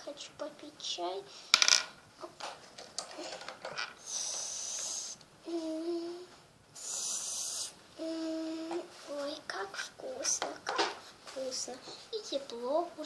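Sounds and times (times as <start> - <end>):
child humming: 4.1 - 8.9.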